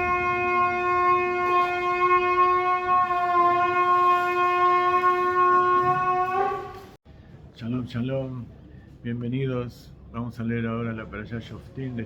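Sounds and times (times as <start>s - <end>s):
shofar long blast: 0.0s - 7.0s.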